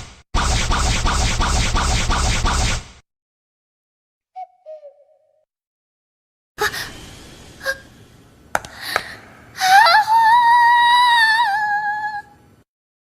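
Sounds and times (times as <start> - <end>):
sharp clicks and knocks: 8.5 - 9.1
high-pitched voice crying: 9.6 - 12.3.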